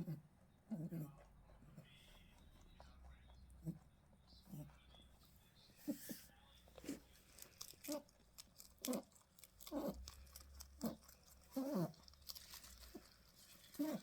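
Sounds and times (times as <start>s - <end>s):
rabbit chewing crunchily: 0.0s - 14.0s
rabbit squeaking: 8.8s - 14.0s.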